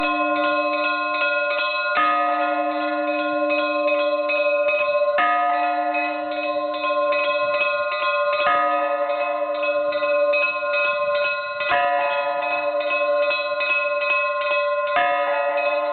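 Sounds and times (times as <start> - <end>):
deep bell struck: 0.0 - 10.2
small bells rung quickly: 0.0 - 15.9.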